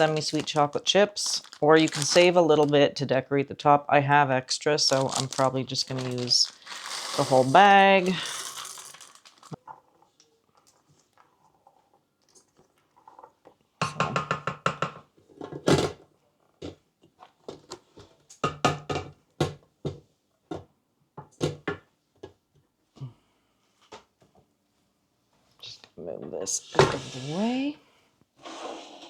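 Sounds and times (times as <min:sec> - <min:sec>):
chocolate chips pouring into bowl: 0:00.0 - 0:02.7, 0:04.8 - 0:09.6
knocks and taps: 0:13.8 - 0:15.0.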